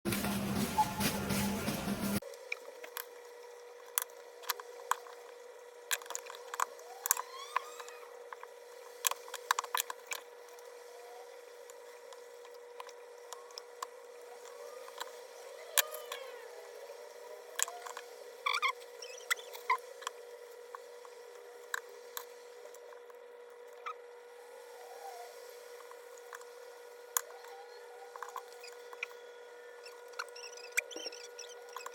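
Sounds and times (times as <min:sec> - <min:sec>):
short squeaks: 0:29.8 - 0:31.9.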